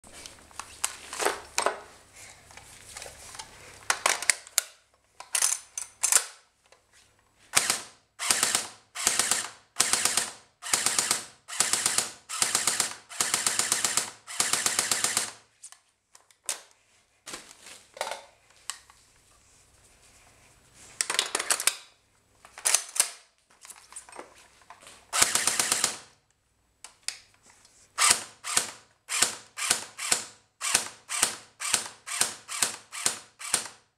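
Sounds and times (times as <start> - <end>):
airsoft rifle full-auto bursts: 7.5 - 15.4, 25.1 - 26.2, 28.0 - 33.9.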